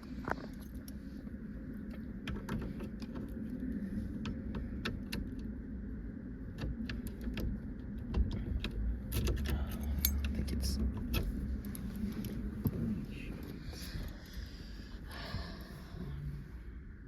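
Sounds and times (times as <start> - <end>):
steady low hum: 0.0 - 17.0
light metallic clicks and rattles: 6.4 - 14.4.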